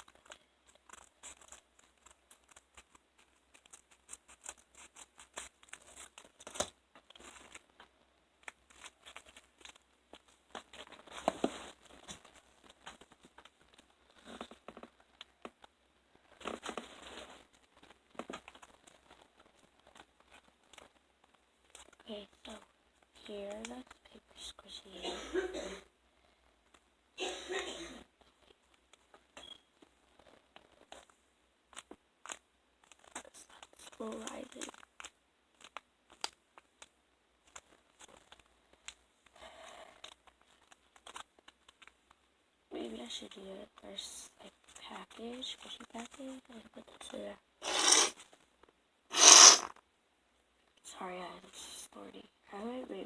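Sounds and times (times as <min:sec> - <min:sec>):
paper crinkling: 0:00.0 - 0:15.3, 0:40.2 - 0:41.9
crackly clicks: 0:00.0 - 0:22.0, 0:28.3 - 0:39.0, 0:40.0 - 0:42.2.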